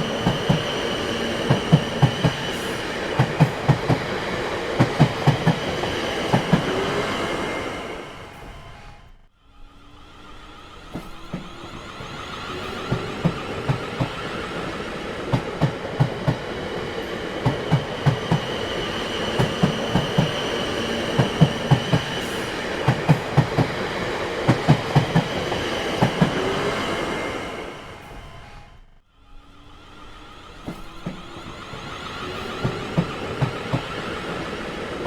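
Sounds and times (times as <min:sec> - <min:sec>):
train wheels clacking over rail joints: 0:00.0 - 0:06.9, 0:10.9 - 0:26.5.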